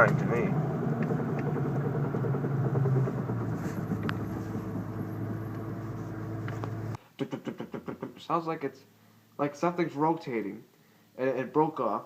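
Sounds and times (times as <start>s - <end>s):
car engine hum: 0.0s - 7.0s
rumbling drivetrain noise: 0.0s - 7.0s.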